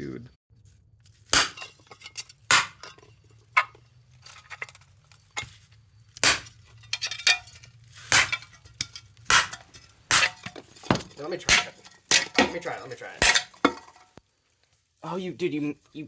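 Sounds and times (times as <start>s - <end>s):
metallic clinks and knocks: 1.4s - 14.2s.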